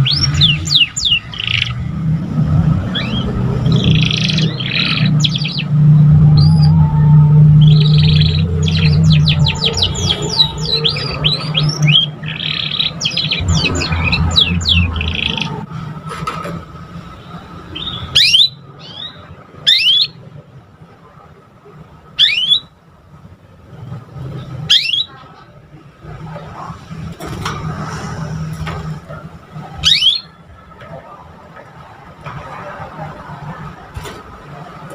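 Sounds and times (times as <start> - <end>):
canary singing: 0.0 - 15.8, 17.6 - 20.3, 22.2 - 22.7, 24.6 - 25.3, 29.6 - 30.5
low hum: 0.0 - 18.2.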